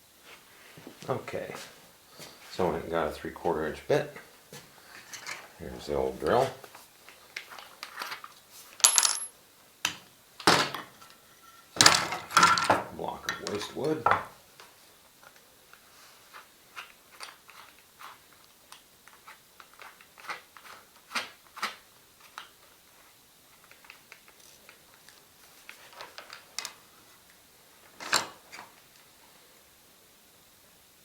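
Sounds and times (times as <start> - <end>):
clicks and knocks of wood and tools: 4.2 - 5.5, 11.8 - 15.4, 23.6 - 26.8.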